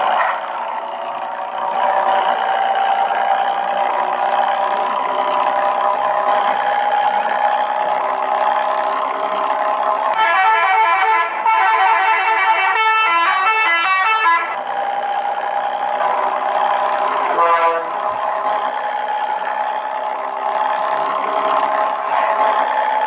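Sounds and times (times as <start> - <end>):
engine idling: 0.0 - 23.0
multi-tone vehicle horn melody: 10.1 - 14.6, 17.3 - 18.3.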